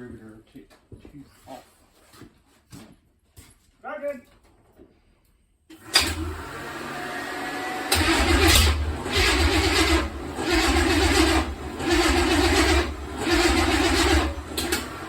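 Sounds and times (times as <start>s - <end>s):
engine cranking and sputtering: 7.9s - 15.0s.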